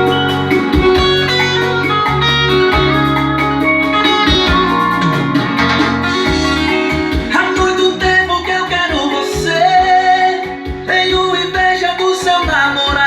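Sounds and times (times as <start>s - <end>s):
plucked guitar music with beat: 0.0s - 13.0s
strong bass line: 0.0s - 13.0s.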